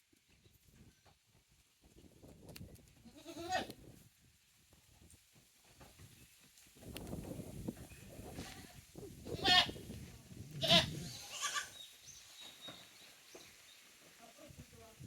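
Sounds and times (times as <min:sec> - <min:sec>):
goats bleating: 0:03.1 - 0:03.7, 0:09.4 - 0:09.7, 0:10.6 - 0:11.8.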